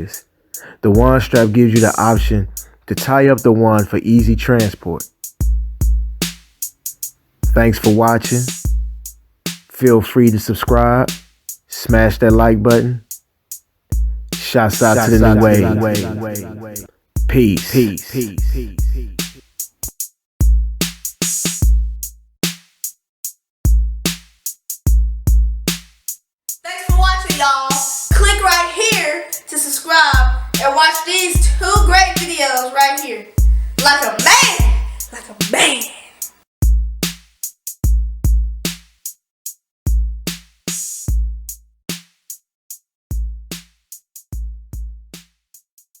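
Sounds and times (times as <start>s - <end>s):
hip-hop drum-machine beat: 0.0s - 3.1s, 4.2s - 9.7s, 10.7s - 13.2s, 14.0s - 22.1s, 26.7s - 39.1s, 39.9s - 41.6s, 43.1s - 45.4s.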